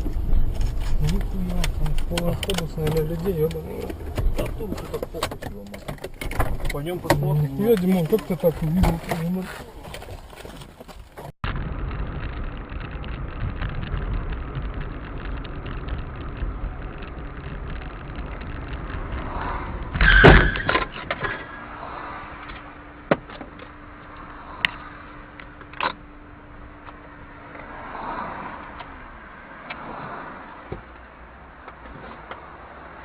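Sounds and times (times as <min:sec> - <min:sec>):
car engine and road noise: 0:00.0 - 0:33.0
sharp clicks: 0:00.9 - 0:08.4.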